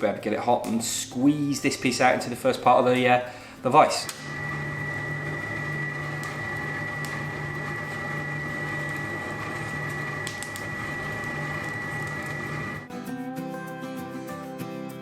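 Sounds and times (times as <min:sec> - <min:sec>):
forge hissing and humming: 0:03.8 - 0:12.9
thin high whine: 0:03.8 - 0:12.9.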